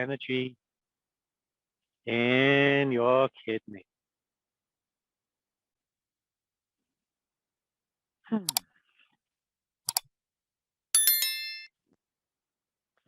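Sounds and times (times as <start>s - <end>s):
metallic ring: 11.0s - 11.7s.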